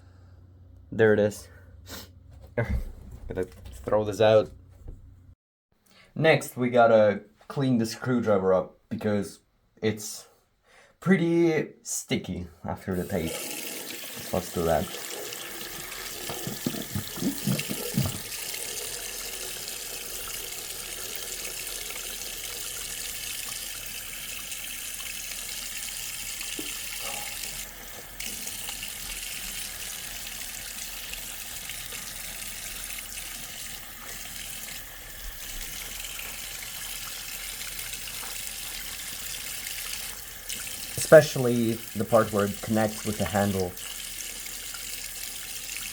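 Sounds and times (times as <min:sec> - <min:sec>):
tap water running into sink: 0:13.0 - 0:45.9.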